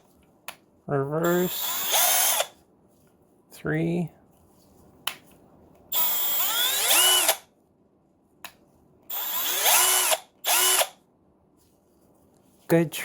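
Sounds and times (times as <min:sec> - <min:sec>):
impact wrench motor whine: 0:05.9 - 0:07.4, 0:09.1 - 0:11.0.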